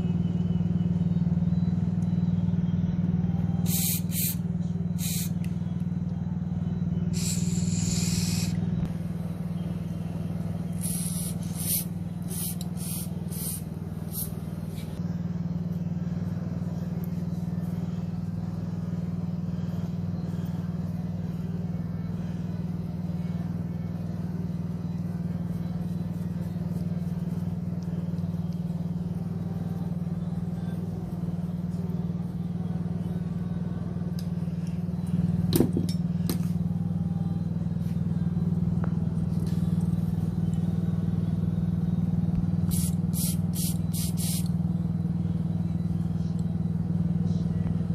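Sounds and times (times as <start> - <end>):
small gasoline engine running: 0.0 - 47.9
short hissing: 3.6 - 4.4, 5.0 - 5.4, 7.1 - 8.6, 10.7 - 15.0, 42.7 - 44.5.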